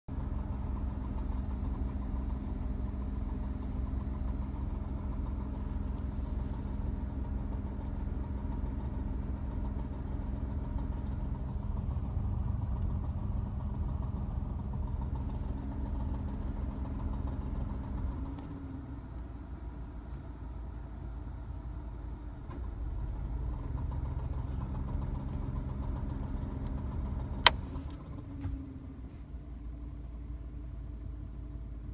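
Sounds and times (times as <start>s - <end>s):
sharp click: 27.4s - 28.0s.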